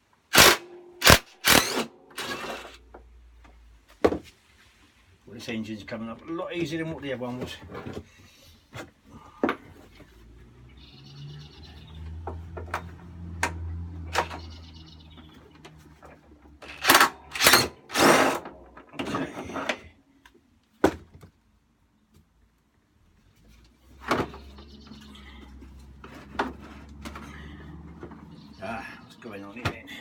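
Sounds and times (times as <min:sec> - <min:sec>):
metal knocks and scraping clatters: 0:25.6 - 0:28.4.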